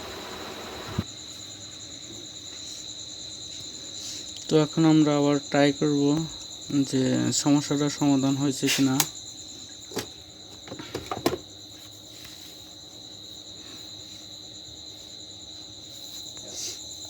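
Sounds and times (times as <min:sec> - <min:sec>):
crickets trilling: 0:00.0 - 0:17.0
light knocks and clicks: 0:09.9 - 0:11.5.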